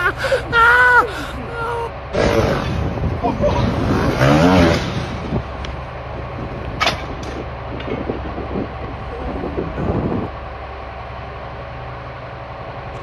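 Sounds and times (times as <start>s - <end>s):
wavering voice-like sound: 0.0s - 2.5s
low mechanical hum: 0.0s - 13.0s.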